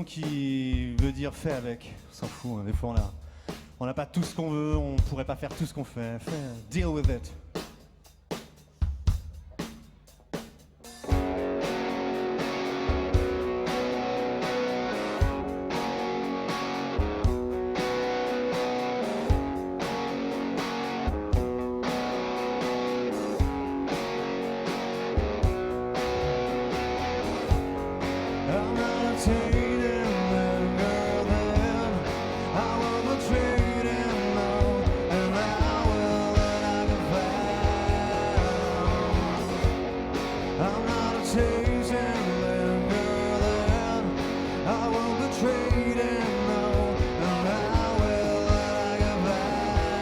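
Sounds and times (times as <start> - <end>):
live rock band playing: 5.0 - 50.0
drum hits: 25.2 - 42.1.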